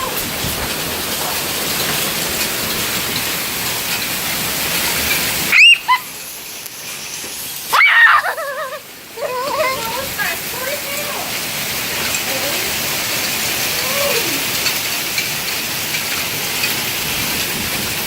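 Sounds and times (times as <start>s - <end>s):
heavy rain and hail: 0.0s - 18.0s
wavering high cry: 5.5s - 6.2s, 7.7s - 9.9s.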